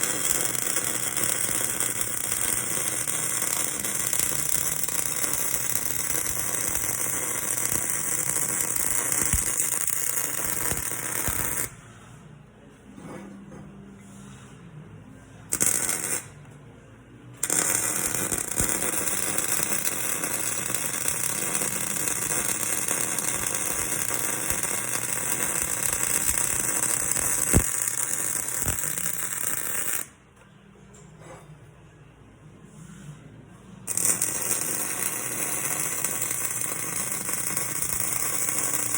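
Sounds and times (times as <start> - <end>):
electric arc welding: 0.0 - 11.7, 15.5 - 16.4, 17.4 - 30.2, 33.9 - 38.9.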